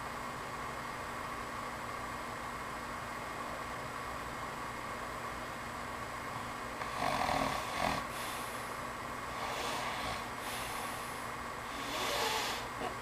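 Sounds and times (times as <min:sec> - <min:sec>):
steady background hiss: 0:00.0 - 0:13.0
man snoring: 0:06.8 - 0:08.5, 0:09.3 - 0:10.9, 0:11.7 - 0:12.7.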